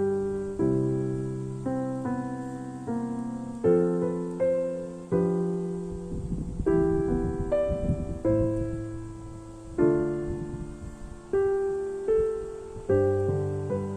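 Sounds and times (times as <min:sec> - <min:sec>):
slow gentle piano chords: 0:00.0 - 0:13.9.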